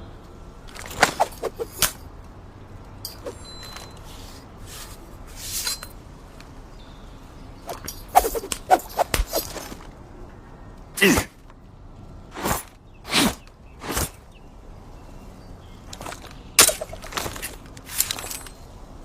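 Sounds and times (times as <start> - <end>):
knife swishing: 0.9 - 1.9, 7.7 - 9.6.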